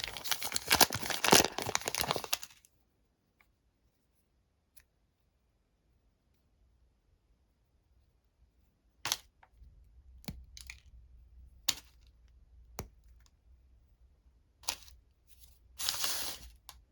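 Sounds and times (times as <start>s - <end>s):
faint wrapper crackles: 0.0s - 2.7s
wrapper crinkling: 0.0s - 2.7s.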